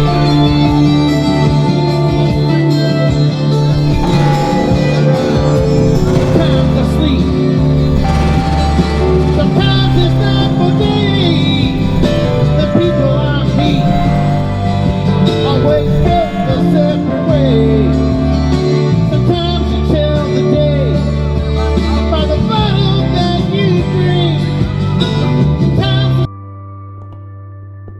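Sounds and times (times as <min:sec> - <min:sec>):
steady low tone: 0:00.0 - 0:18.7.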